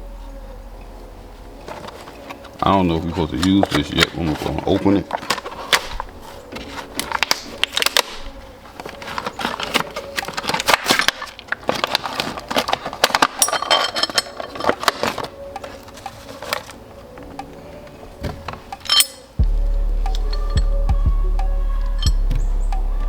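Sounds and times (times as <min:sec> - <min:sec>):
packaging crinkling: 0:01.5 - 0:18.8.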